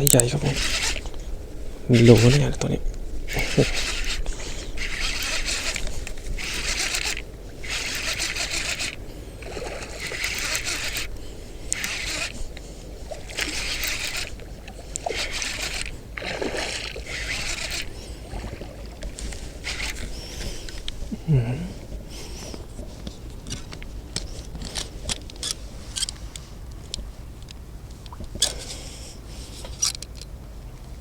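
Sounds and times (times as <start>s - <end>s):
splashing in shallow water: 0.0s - 23.0s.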